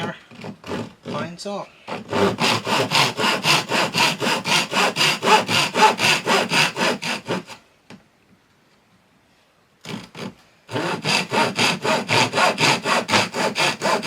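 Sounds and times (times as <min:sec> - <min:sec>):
hand saw cutting plywood: 0:00.0 - 0:01.3, 0:01.9 - 0:07.6, 0:09.9 - 0:14.0.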